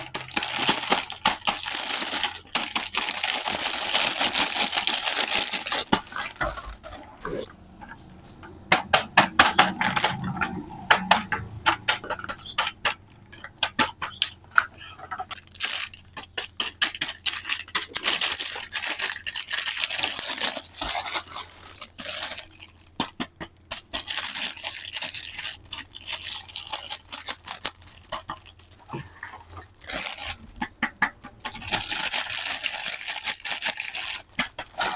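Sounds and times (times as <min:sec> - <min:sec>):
small plastic toy pieces clattering: 0:00.0 - 0:07.0, 0:13.7 - 0:34.9
packaging rustling and tearing: 0:00.0 - 0:07.5, 0:15.2 - 0:30.7, 0:31.4 - 0:34.9.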